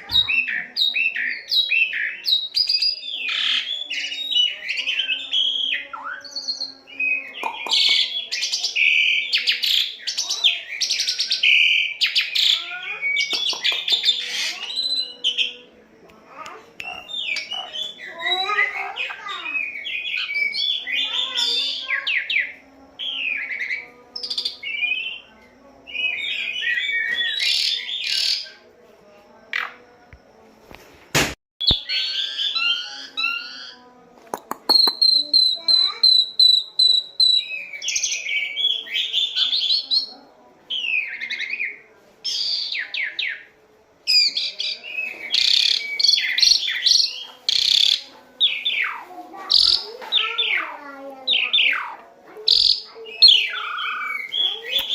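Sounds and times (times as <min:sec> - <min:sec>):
starling singing: 0:00.0 - 0:30.1, 0:31.6 - 0:54.9
bird clicks: 0:34.3 - 0:35.1.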